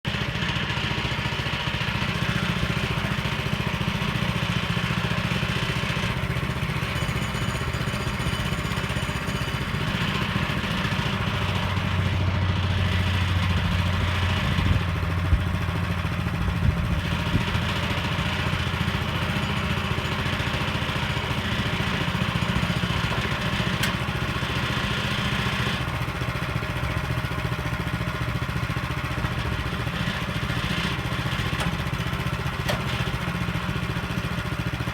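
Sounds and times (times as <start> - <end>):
sawmill engine running: 0.1 - 34.9.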